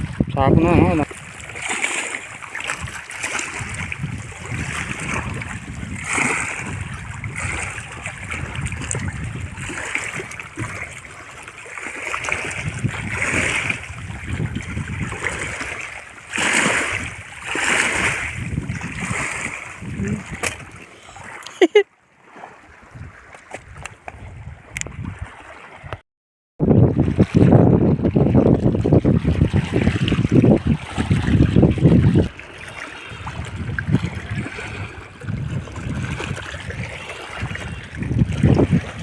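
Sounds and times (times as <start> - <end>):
moving water wash: 0.0 - 21.8, 27.1 - 39.0
river water splashing: 0.0 - 25.9, 28.2 - 39.0.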